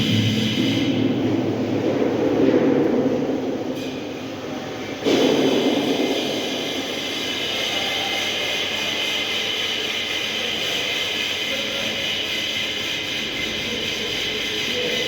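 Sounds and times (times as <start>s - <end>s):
metalworking hiss and whine: 0.0s - 1.2s, 5.0s - 15.0s.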